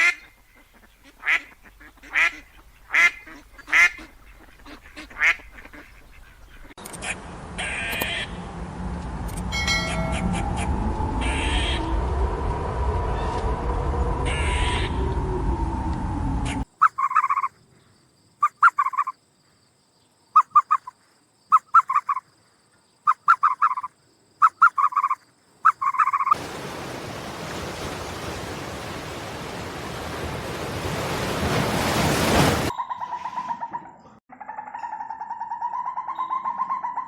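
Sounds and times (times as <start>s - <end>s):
rattling animal calls: 6.8s - 8.4s.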